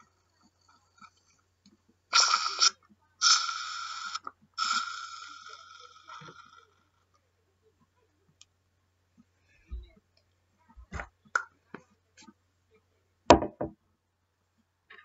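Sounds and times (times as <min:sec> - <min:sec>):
dull thump: 0:13.3 - 0:13.8.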